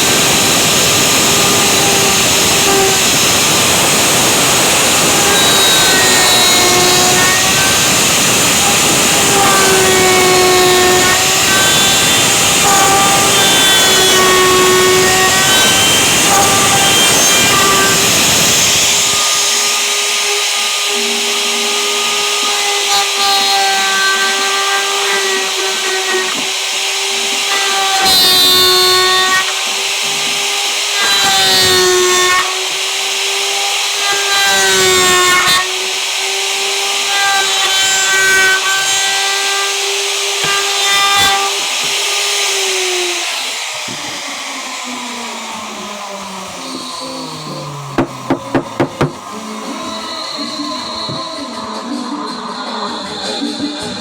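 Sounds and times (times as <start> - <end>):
power tool cutting wood: 0.0 - 54.0.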